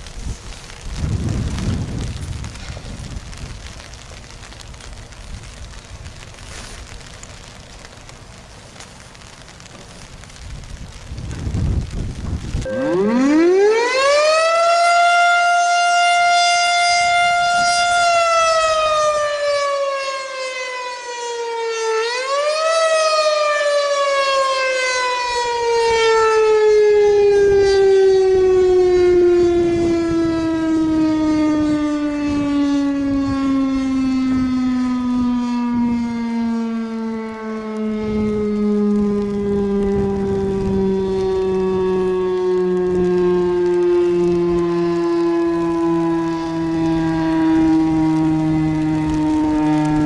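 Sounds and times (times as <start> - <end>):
fire siren wailing: 0.0 - 50.0.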